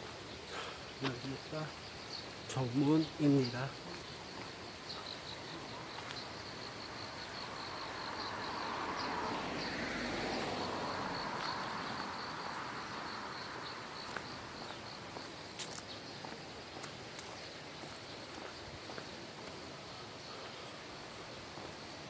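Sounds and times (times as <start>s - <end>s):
insects chirping: 0.0s - 22.0s.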